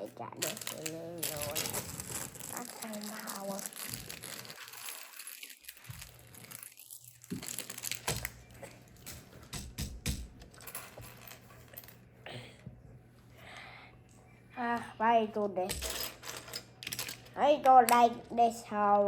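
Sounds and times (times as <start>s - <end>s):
faint low hum: 0.0s - 19.0s
plastic pieces clicking and rattling: 0.4s - 8.4s, 15.7s - 18.2s.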